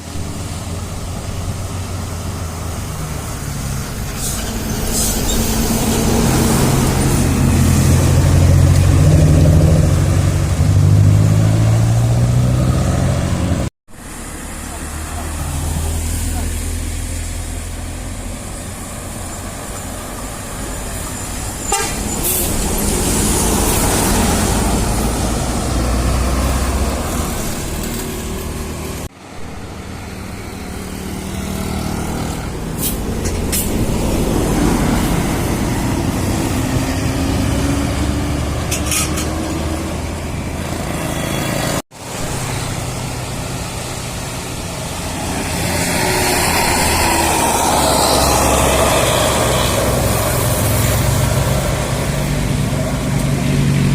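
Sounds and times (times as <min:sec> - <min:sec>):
heavy bus engine running: 0:00.0 - 0:53.9
multi-tone horn toots: 0:21.6 - 0:22.6.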